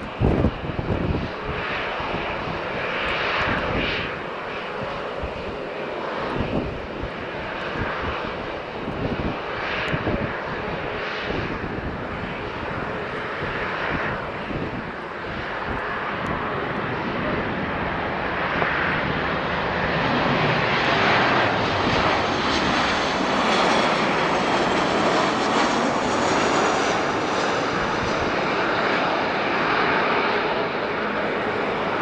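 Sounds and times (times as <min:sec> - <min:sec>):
jet engine rushing: 0:00.0 - 0:32.0.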